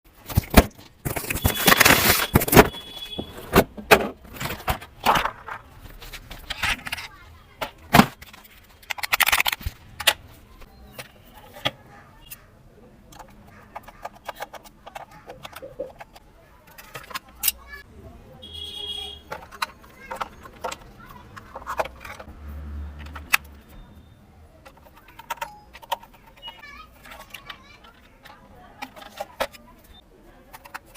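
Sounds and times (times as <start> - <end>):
plastic packaging rustling: 0.1 - 7.2
plastic toy car clicks and knocks: 0.2 - 12.4, 13.0 - 17.8, 19.2 - 23.7, 24.5 - 30.9.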